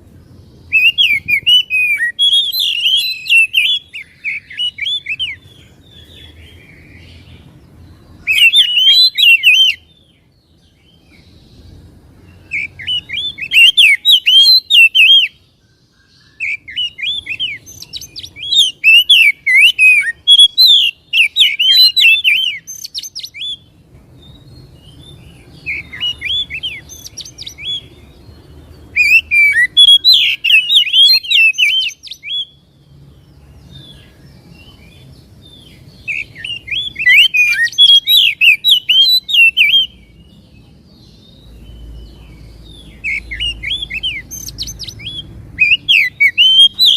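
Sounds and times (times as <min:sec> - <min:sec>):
bird singing whistled phrases: 0:00.7 - 0:07.2, 0:08.2 - 0:10.0, 0:12.4 - 0:15.4, 0:16.0 - 0:23.7, 0:24.5 - 0:28.0, 0:28.9 - 0:32.6, 0:35.6 - 0:40.4, 0:42.6 - 0:46.9.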